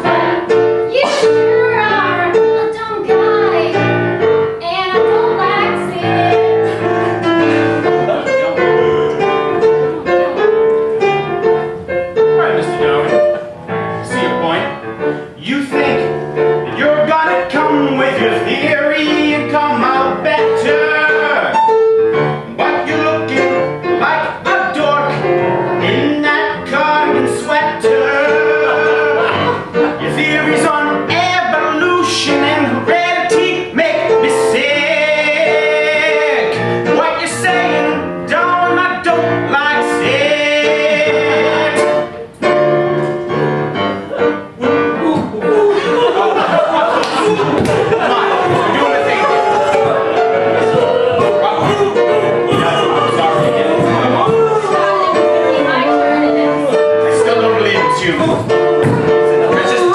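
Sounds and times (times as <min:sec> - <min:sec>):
piano accompaniment: 0:00.0 - 0:59.9
person singing: 0:48.0 - 0:59.9.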